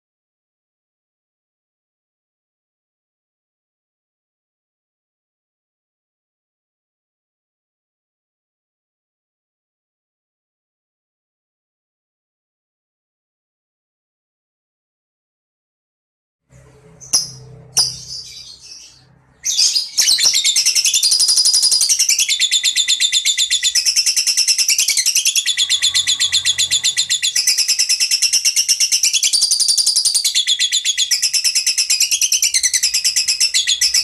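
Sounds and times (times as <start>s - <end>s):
small bird chirping: 16.8s - 34.0s.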